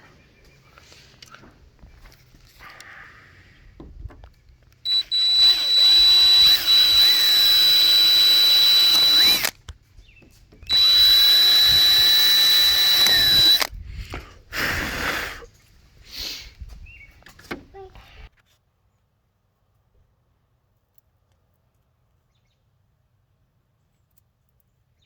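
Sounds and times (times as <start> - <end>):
power tool high whine: 4.9 - 9.5, 10.7 - 13.7.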